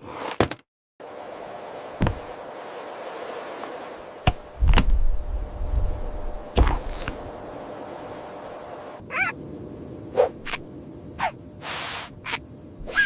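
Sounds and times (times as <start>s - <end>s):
steady background hum: 1.0s - 13.0s
low rumble: 4.3s - 8.4s.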